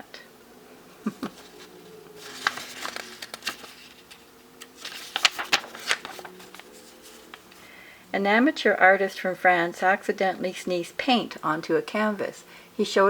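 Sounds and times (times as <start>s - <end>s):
paper booklet rustling: 1.3s - 7.7s.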